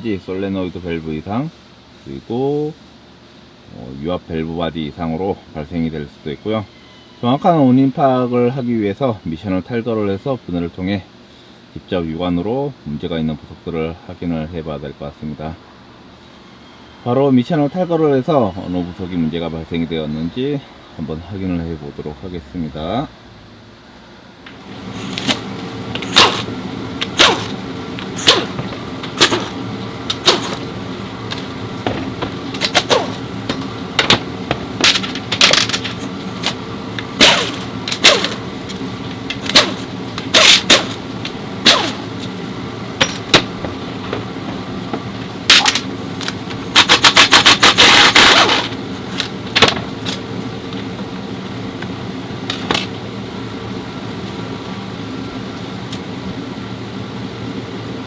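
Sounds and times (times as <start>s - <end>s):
workshop hum: 0.0s - 58.0s
rapid rattle: 24.8s - 42.3s
metal tools clinking: 24.9s - 50.2s.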